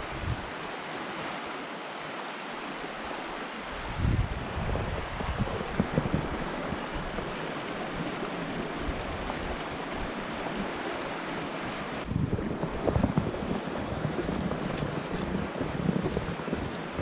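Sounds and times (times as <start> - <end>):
wind buffeting microphone: 0.0 - 0.6, 3.6 - 17.0
wind rushing: 3.8 - 7.3, 12.0 - 17.0.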